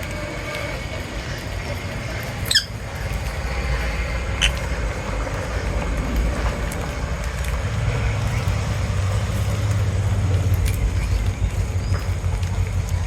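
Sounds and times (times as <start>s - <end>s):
steady low rumble: 0.0s - 13.0s
high bird chirps: 2.4s - 2.8s.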